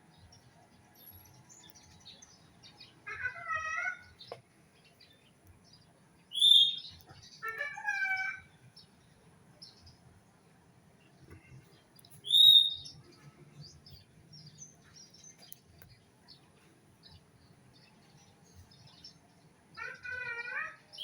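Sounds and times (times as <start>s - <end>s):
faint bird chirps: 6.3s - 8.9s, 11.3s - 16.4s.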